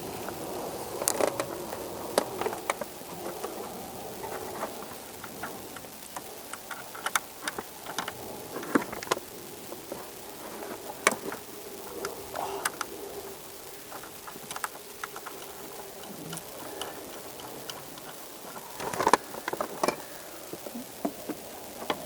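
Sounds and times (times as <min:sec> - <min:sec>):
faint steady hum: 0:00.0 - 0:22.0
plastic and metal parts clicking: 0:04.4 - 0:09.2, 0:13.9 - 0:20.0.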